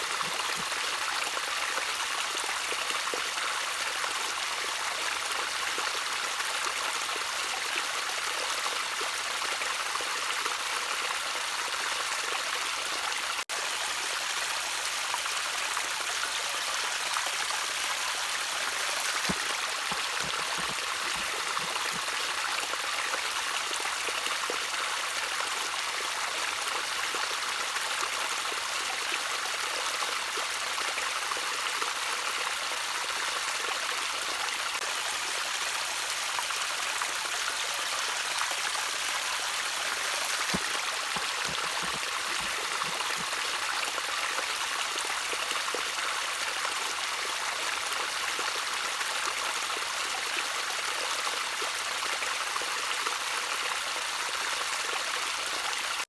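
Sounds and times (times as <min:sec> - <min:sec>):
water trickling: 0:17.0 - 0:24.2, 0:38.4 - 0:44.7.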